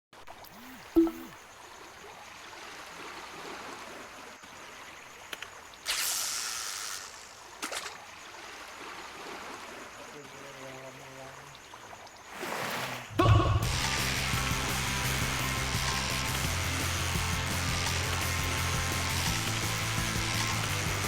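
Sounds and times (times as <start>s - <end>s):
rushing water: 0.2s - 21.0s
loud hissing splash: 5.8s - 8.0s, 12.2s - 21.0s.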